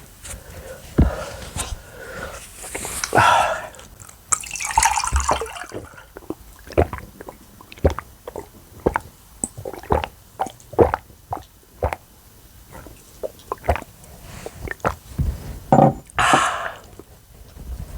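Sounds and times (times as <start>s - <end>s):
wet chewing mouth sounds: 5.2s - 15.1s.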